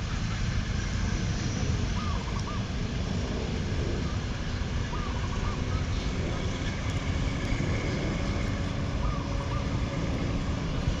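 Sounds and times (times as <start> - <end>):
diesel train rumbling: 0.0 - 11.0
faint bird calls: 1.9 - 2.8, 4.8 - 6.1, 9.0 - 9.8.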